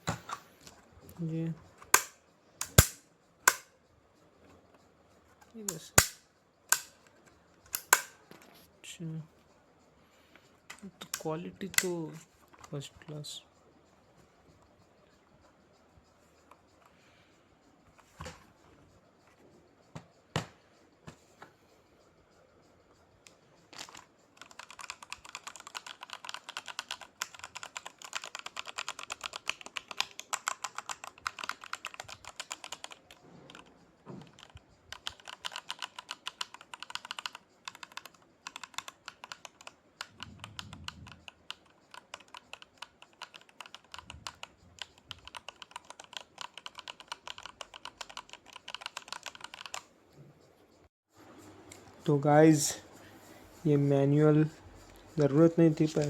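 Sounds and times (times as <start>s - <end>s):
mechanical keyboard typing: 1.9s - 3.7s, 10.8s - 12.8s, 23.8s - 49.9s.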